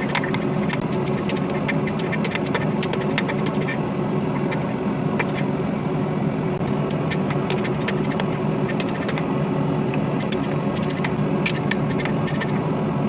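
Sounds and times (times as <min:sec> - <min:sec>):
forge burner roaring: 0:00.0 - 0:13.0
sharp ticks and clicks: 0:00.1 - 0:03.7, 0:06.6 - 0:09.2.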